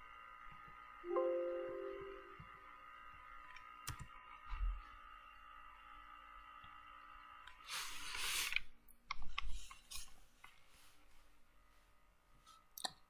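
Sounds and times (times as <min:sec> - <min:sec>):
computer mouse clicks: 0:03.8 - 0:04.1.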